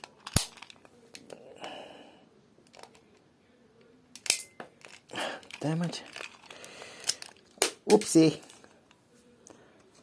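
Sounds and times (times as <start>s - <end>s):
plastic handling noise: 0.0s - 1.4s, 2.6s - 3.2s, 4.2s - 9.0s.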